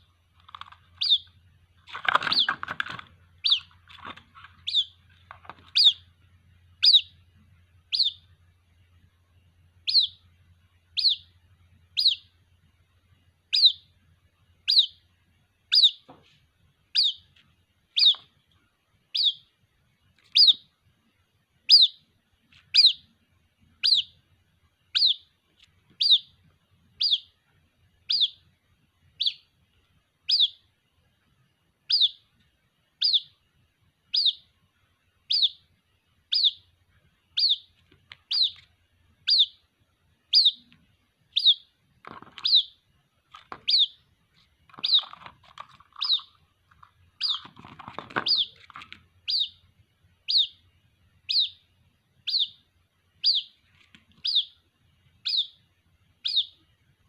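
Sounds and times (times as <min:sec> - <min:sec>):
rough low bird noises: 0:00.0 - 0:08.4, 0:35.2 - 0:57.0
bird chick peeping: 0:00.0 - 0:57.0.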